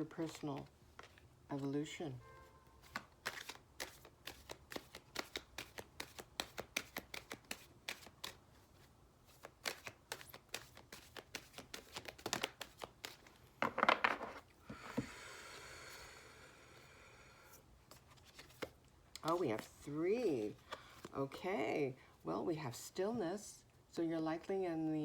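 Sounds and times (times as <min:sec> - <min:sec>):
cards being shuffled: 0:00.0 - 0:01.3, 0:02.8 - 0:15.1, 0:17.8 - 0:21.2.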